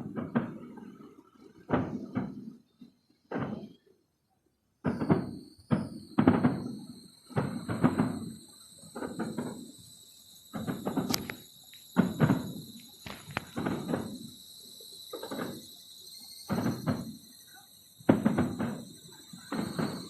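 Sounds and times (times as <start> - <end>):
fireworks thudding: 0.0 - 3.9, 4.8 - 20.0
high-pitched whine: 4.9 - 20.0.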